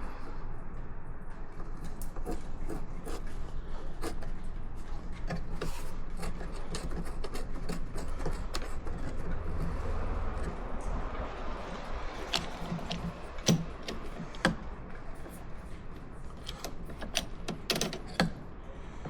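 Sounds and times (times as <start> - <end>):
steady low hum: 0.0 - 19.0
clamp clicking and scraping: 5.0 - 19.0.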